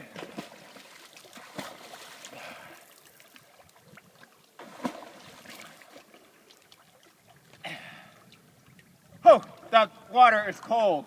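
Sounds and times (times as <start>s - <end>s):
water splashing around swimmer: 0.0s - 7.6s.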